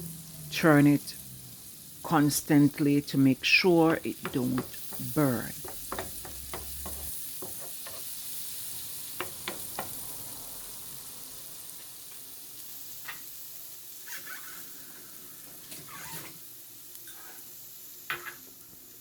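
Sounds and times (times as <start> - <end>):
garlic sizzling in butter: 0.0 - 19.0
utensil tapping and scraping pan: 3.8 - 8.1, 9.2 - 10.0.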